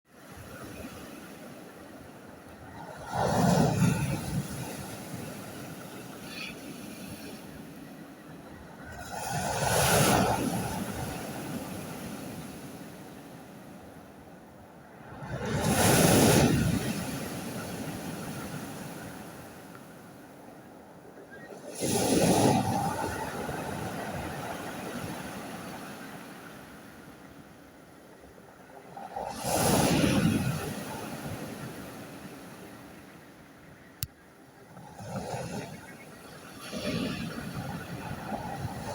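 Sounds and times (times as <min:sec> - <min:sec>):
sea waves breaking on beach: 0:00.1 - 0:38.9.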